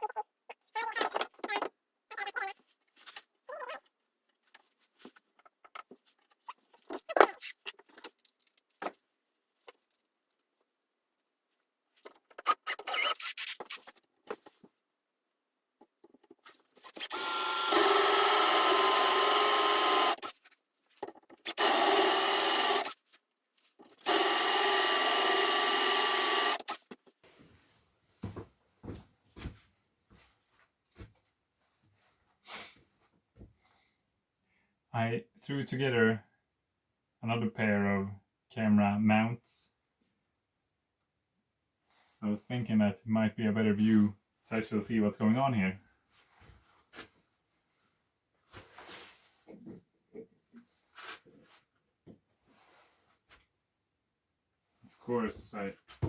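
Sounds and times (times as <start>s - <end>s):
handheld power tool motor running: 16.9s - 20.3s, 21.5s - 23.0s, 24.0s - 26.8s.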